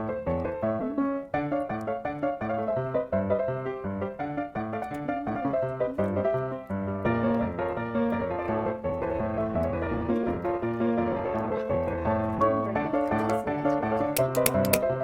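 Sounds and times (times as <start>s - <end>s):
background piano music: 0.0s - 15.0s.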